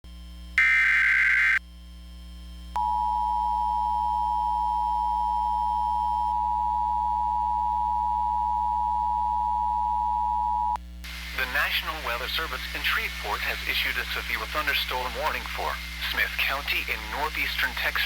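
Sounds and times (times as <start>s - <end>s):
warbling digital header bursts: 0.6s - 1.6s.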